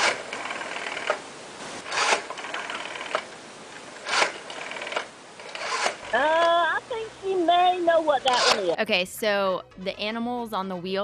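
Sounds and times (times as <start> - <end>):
rotary dial swiped with rasp: 0.0 - 1.2, 1.8 - 3.3, 4.0 - 6.1, 8.3 - 8.7
rotary dial ticking back: 0.0 - 6.6, 8.3 - 8.7.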